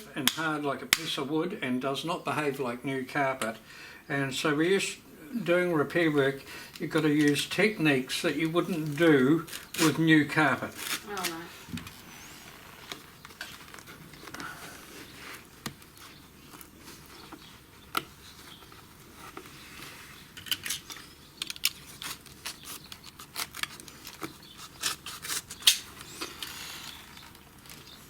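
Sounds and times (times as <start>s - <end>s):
carpet crackling and clicking: 10.7s - 28.0s.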